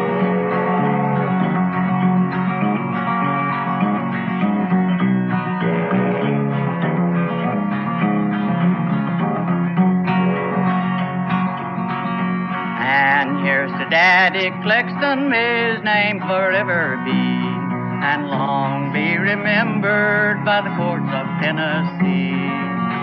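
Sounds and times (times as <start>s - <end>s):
picked guitar melody: 0.0s - 23.0s
strummed guitar rhythm: 0.0s - 23.0s.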